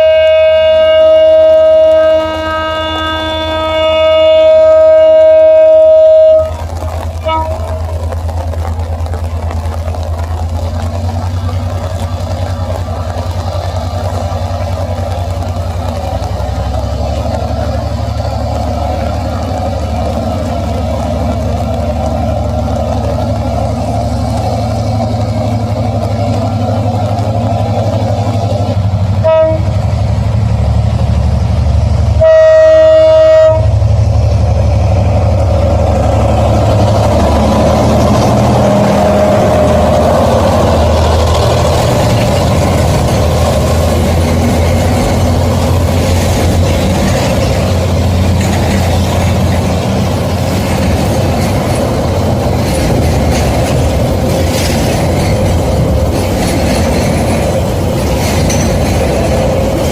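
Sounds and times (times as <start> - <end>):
train horn blasts: 0.0 - 8.0, 29.2 - 29.8, 32.2 - 33.9
freight train rumbling past: 0.0 - 59.9.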